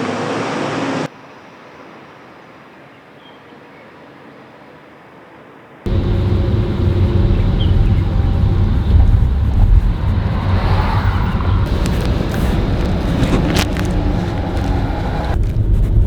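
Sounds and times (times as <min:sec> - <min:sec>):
diesel construction machinery running: 0:05.9 - 0:15.4.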